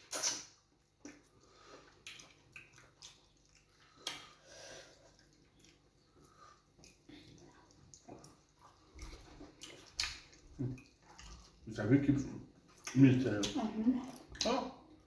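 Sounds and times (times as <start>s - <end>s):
wet eating sounds: 0.0s - 15.0s.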